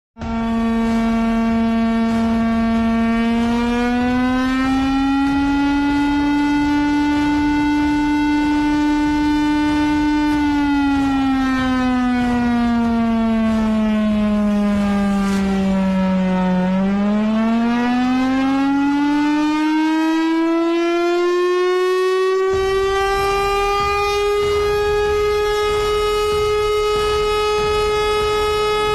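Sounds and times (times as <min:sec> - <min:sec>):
air-raid siren wailing: 0:00.2 - 0:28.9.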